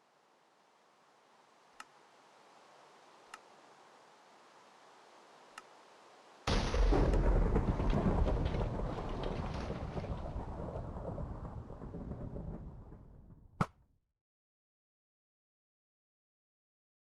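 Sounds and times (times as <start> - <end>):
faint sharp ticks: 1.8 - 2.0.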